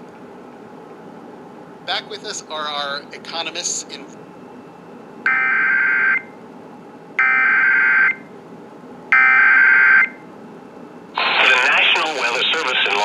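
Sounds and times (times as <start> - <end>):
faint radio hiss: 11.2 - 13.0.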